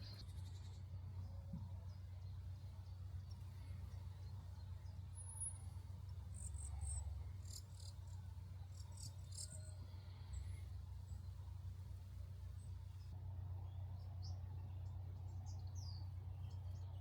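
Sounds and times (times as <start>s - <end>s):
faint high-pitched chirping trills: 0.0s - 11.5s
low steady rumble: 0.0s - 17.0s.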